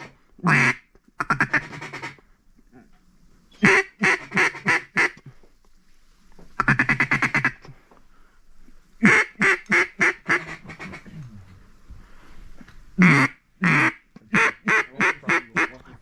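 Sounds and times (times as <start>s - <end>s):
duck call quacking: 0.0s - 2.2s, 3.6s - 5.2s, 6.6s - 7.6s, 9.0s - 11.1s, 13.0s - 15.8s.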